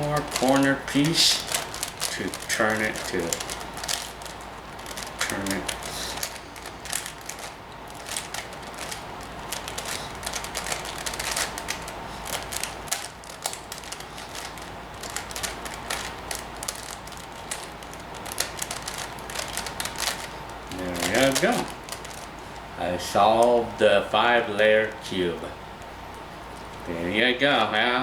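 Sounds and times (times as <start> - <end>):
puzzle cube clicking: 0.0 - 20.3.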